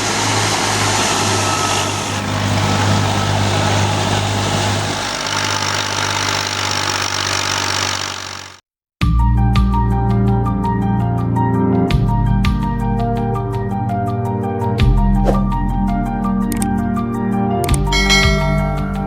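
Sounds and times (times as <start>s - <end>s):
wheat thresher running: 0.0s - 8.6s
music: 9.0s - 19.0s.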